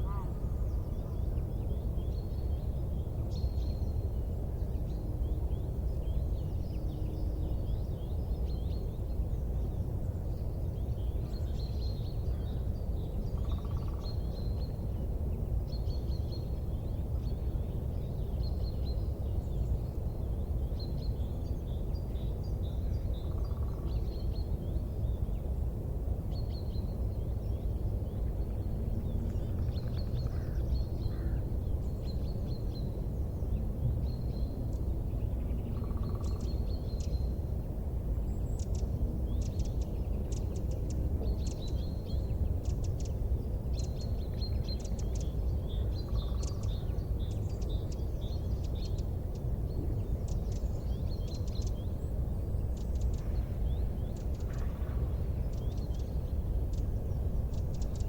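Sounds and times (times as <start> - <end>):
small birds chirping: 38.2 - 58.0.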